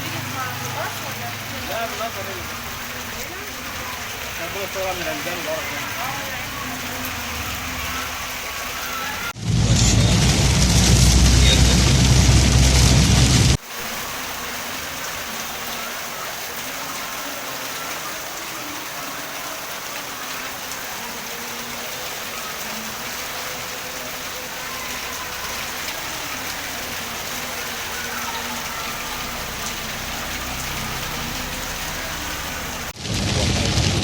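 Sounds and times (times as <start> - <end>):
heavy rain hissing: 0.0 - 34.0.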